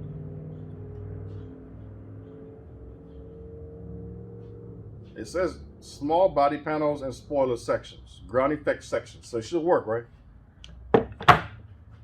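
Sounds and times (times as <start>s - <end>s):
droning background music: 0.0s - 8.4s.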